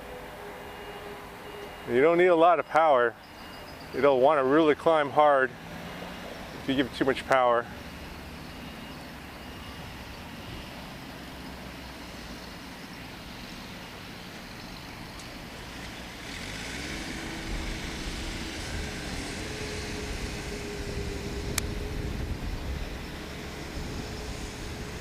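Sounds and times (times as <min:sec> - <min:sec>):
small electric motors whining: 0:07.8 - 0:25.0
wind rumbling on microphone: 0:17.4 - 0:25.0.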